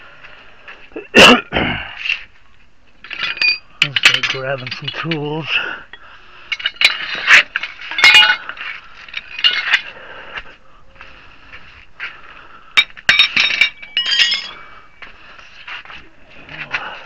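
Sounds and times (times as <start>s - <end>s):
metal hand tools clinking: 3.0s - 5.4s, 6.5s - 9.9s, 12.8s - 15.0s.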